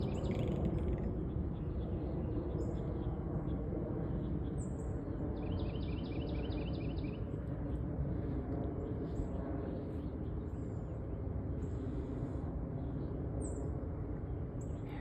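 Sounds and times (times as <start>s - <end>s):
small birds chirping: 0.0s - 7.8s
low outdoor rumble: 0.0s - 15.0s.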